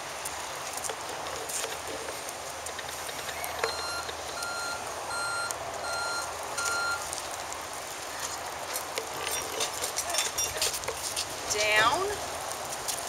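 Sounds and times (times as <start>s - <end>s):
outdoor background noise: 0.0s - 13.0s
short electronic beeps: 3.7s - 7.0s.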